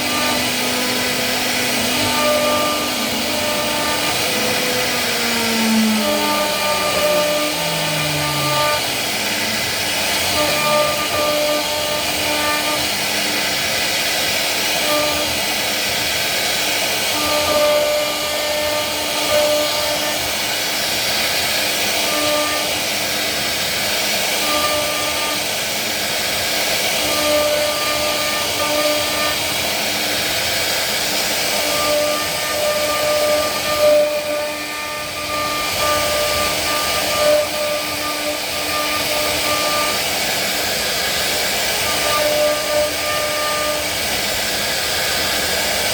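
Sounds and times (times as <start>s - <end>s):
wood router hiss and whine: 0.0s - 45.9s.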